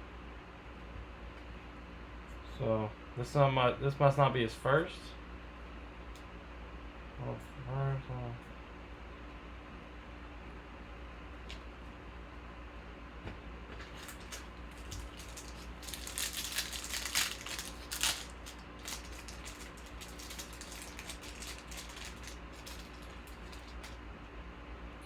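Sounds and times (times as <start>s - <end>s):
card wrappers rustling and crinkling: 13.8s - 24.0s.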